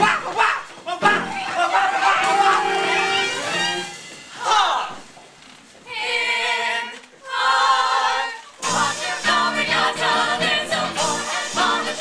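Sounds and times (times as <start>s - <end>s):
musical accompaniment: 2.2s - 4.7s, 8.6s - 12.0s
ensemble singing: 5.9s - 12.0s.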